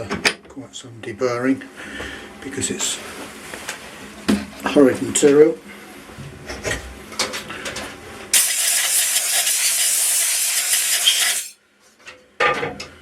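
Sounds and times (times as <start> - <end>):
compressed air blow gun hissing: 8.4 - 11.5.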